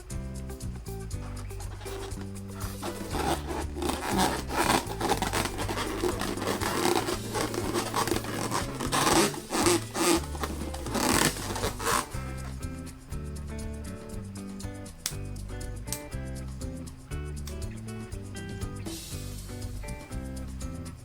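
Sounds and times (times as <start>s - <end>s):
background music with bass line: 0.0s - 21.0s
balloon squeaking when rubbed: 1.2s - 12.6s.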